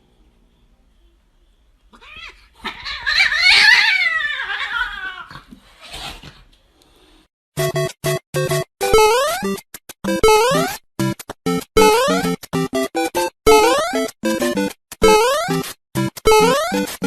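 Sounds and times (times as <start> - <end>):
dog howling: 2.0 - 5.3.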